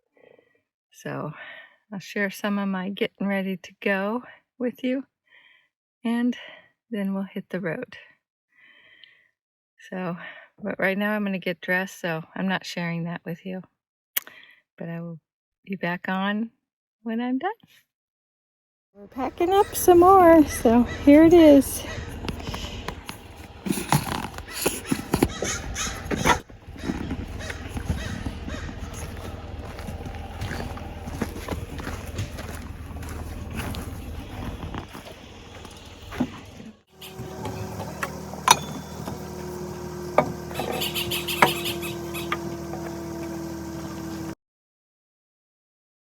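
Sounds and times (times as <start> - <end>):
steady hum: 19.1 - 44.3
knocks and clicks of items handled: 22.2 - 30.8, 35.6 - 39.3.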